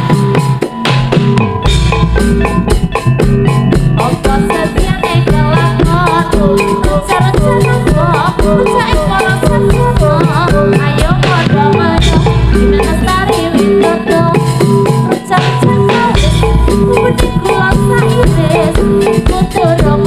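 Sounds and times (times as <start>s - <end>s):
drums and percussion beat: 0.0s - 20.0s
wavering melody: 0.0s - 20.0s.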